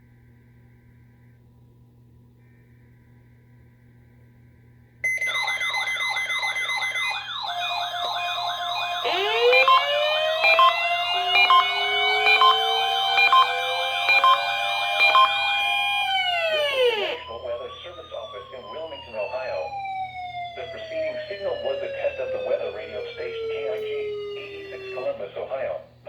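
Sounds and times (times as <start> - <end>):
siren yelping: 5.0 - 25.6
sirens winding up: 5.0 - 25.6.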